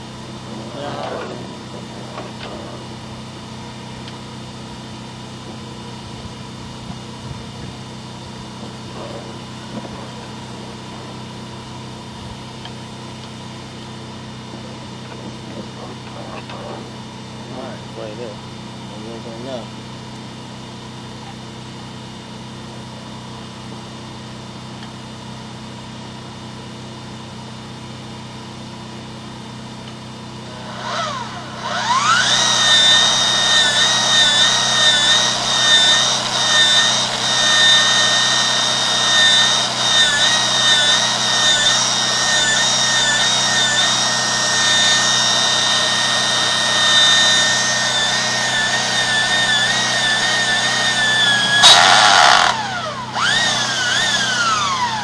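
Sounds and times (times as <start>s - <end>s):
drain-cleaning machine motor whine: 0.0s - 4.6s, 30.3s - 55.0s.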